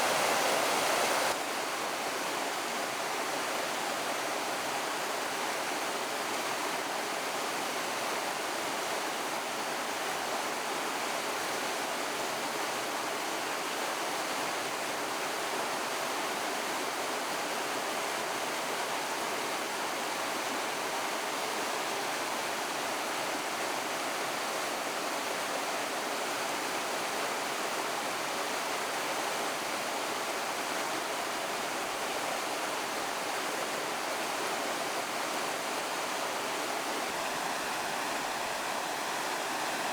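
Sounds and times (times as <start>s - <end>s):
water rushing over rocks: 0.0s - 1.4s, 36.9s - 39.9s.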